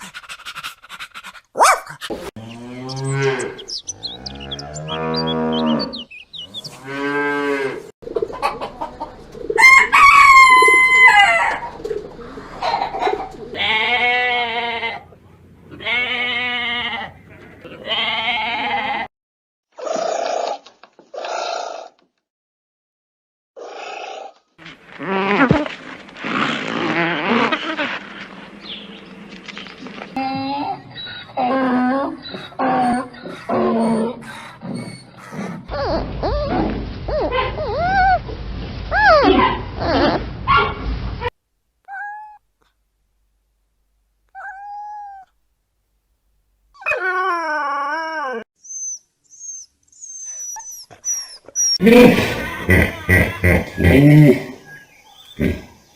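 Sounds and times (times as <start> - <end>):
dog whining and yelping: 1.6 - 2.1, 31.0 - 38.3, 38.9 - 39.6, 44.4 - 45.3, 46.8 - 51.8
farm animal bleating: 13.6 - 19.1
dog howling: 31.2 - 35.1.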